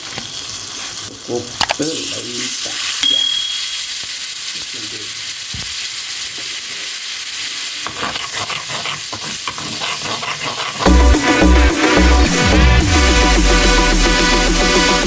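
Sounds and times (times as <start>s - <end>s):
liquid sizzling in a hot pan: 0.0s - 11.9s.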